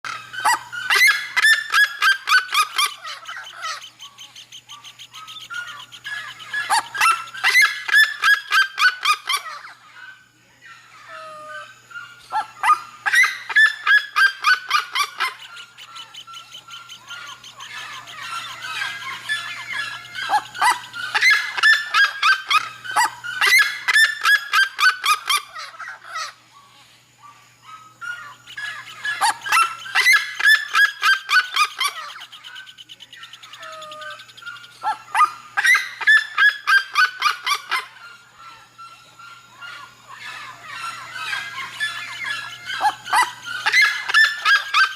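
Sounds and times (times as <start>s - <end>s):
bird yelping calls: 0.1s - 44.9s.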